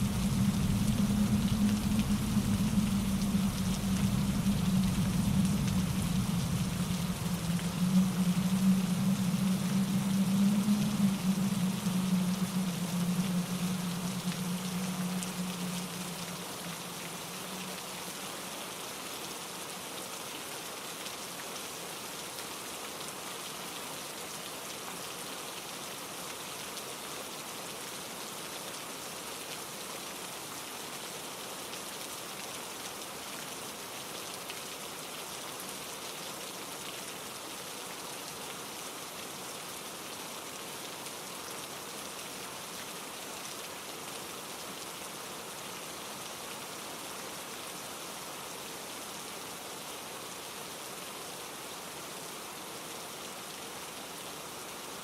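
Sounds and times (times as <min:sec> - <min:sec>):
stream tumbling over rocks: 0:00.0 - 0:23.3
rain falling on trees: 0:00.0 - 0:55.0
wind through leaves: 0:00.0 - 0:55.0.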